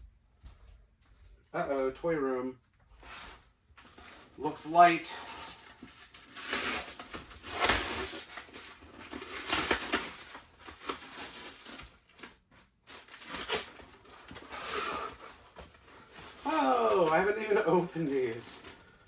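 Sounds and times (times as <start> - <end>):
cardboard boxes rustling: 3.0 - 4.5, 5.4 - 18.8.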